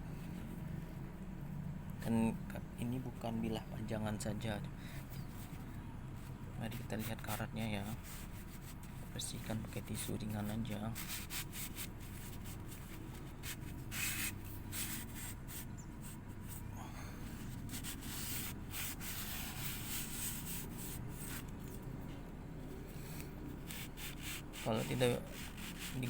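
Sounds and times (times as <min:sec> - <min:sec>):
tissue rubbing on rusted blade: 0:05.0 - 0:21.8, 0:22.8 - 0:26.0.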